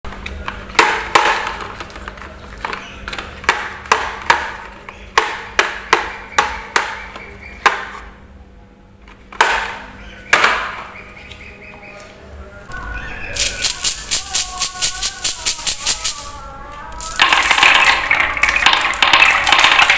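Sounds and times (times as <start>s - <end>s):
marbles clacking on wooden track: 13.4s - 16.3s, 17.0s - 19.9s.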